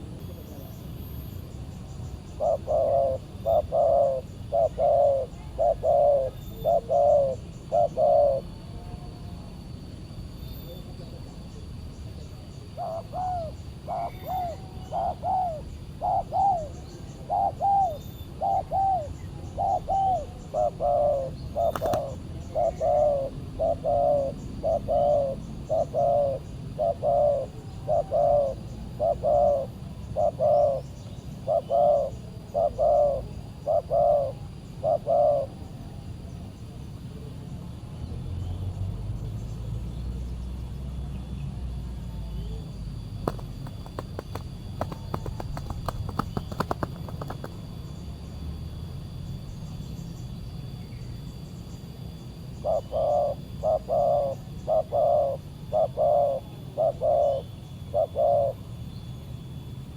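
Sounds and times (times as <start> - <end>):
dove cooing: 2.3 - 9.0, 12.7 - 36.0, 43.2 - 47.6, 52.6 - 58.8.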